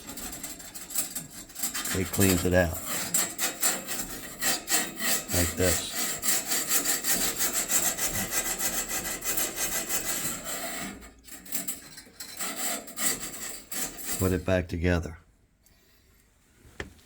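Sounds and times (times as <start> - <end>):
tool scraping inside metal chimney: 0.0 - 14.6.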